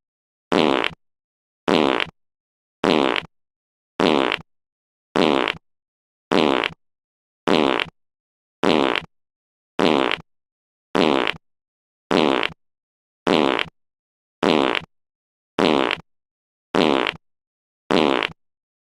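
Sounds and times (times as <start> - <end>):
fart sound effect: 0.5 - 1.0, 1.7 - 2.1, 2.8 - 3.3, 4.0 - 4.4, 5.2 - 5.6, 6.3 - 6.8, 7.5 - 7.9, 8.6 - 9.1, 9.8 - 10.2, 11.0 - 11.4, 12.1 - 12.6, 13.3 - 13.7, 14.4 - 14.9, 15.6 - 16.0, 16.8 - 17.2, 17.9 - 18.4.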